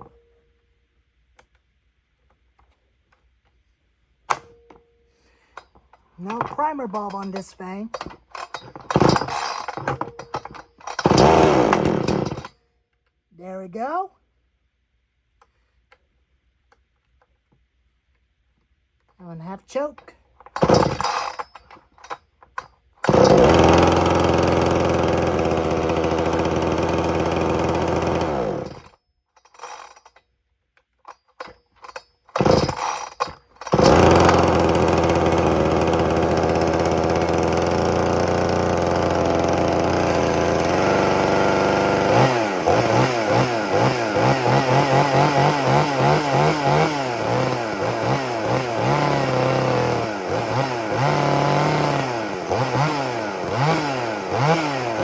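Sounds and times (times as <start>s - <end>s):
chainsaw starter cord pulls: 5.5s - 12.6s, 20.0s - 30.2s, 31.1s - 55.0s
chainsaw engine running and revving: 11.0s - 12.5s, 20.6s - 21.2s, 23.1s - 28.9s, 32.4s - 33.0s, 33.7s - 55.0s.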